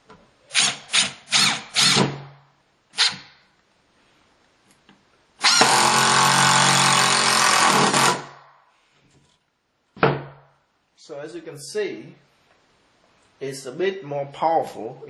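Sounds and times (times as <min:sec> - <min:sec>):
impact driver hammering screw: 0:00.5 - 0:02.3, 0:05.4 - 0:08.4.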